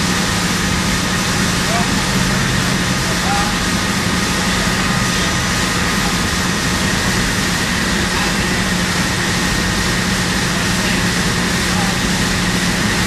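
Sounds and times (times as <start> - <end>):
loud mechanical drone: 0.0 - 13.0.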